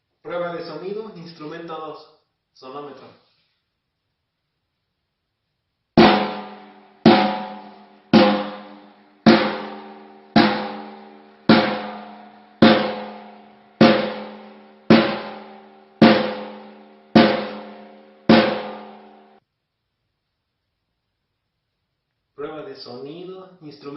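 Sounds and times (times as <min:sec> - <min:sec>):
drum hits ringing: 0:06.0 - 0:19.4.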